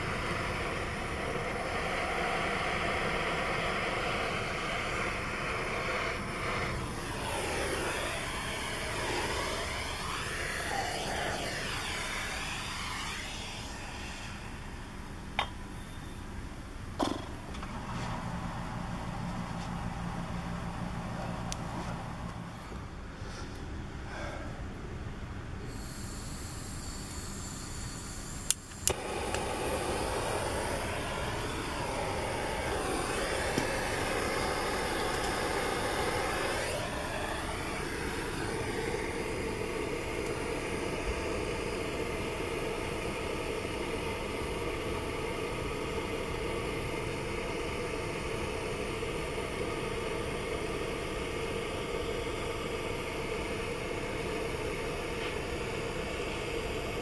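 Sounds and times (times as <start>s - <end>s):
motor-driven machine running: 0.0s - 14.7s, 25.7s - 50.7s.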